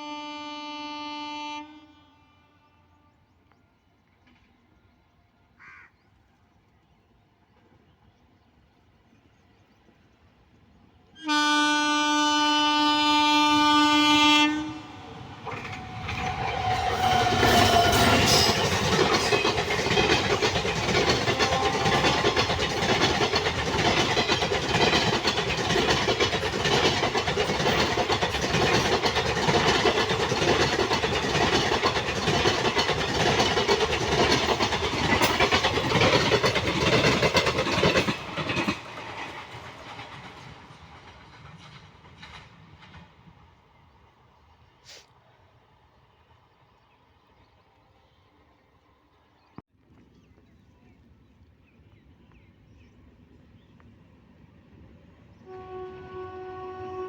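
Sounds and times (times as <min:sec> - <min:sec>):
train horn blast: 0:00.0 - 0:03.2, 0:11.2 - 0:18.9, 0:21.1 - 0:22.6, 0:55.4 - 0:57.0
train passing at speed: 0:06.6 - 0:44.8, 0:52.1 - 0:57.0
wheels clacking over rail joints: 0:14.6 - 0:43.4.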